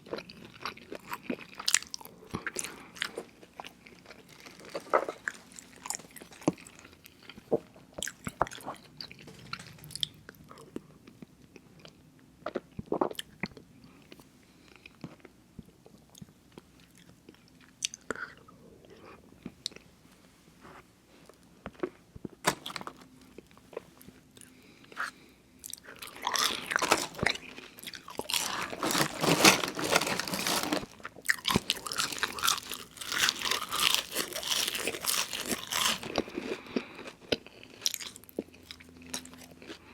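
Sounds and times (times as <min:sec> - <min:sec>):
crunching crisp food: 0:00.0 - 0:10.7, 0:21.7 - 0:39.9.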